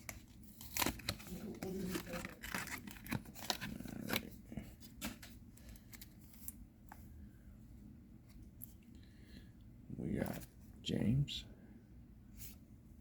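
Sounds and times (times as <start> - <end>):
cards rustling: 0.0 - 6.6
booster pack wrapper crinkling: 0.1 - 4.3.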